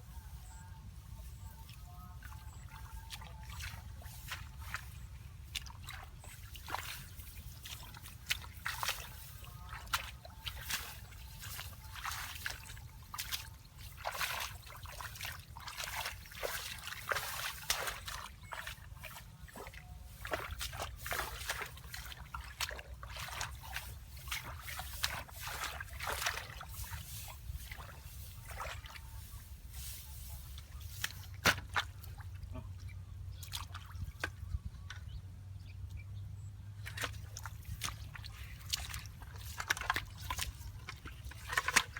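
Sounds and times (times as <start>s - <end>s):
water splashing and sloshing: 1.3s - 35.2s, 36.7s - 41.9s.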